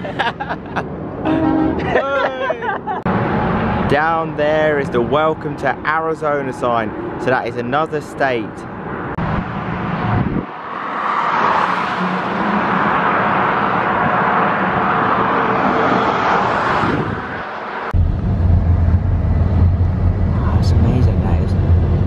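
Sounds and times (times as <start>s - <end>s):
freeway traffic passing: 0.0s - 22.0s
steady low rumble: 17.9s - 22.0s.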